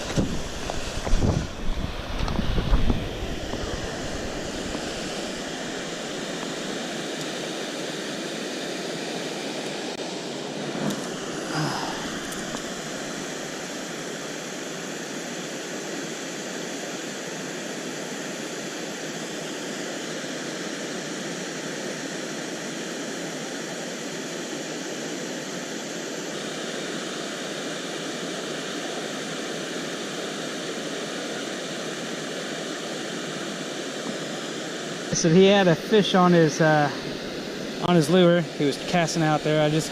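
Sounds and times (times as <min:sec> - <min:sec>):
river water rushing: 0:00.0 - 0:22.2, 0:31.7 - 0:39.9.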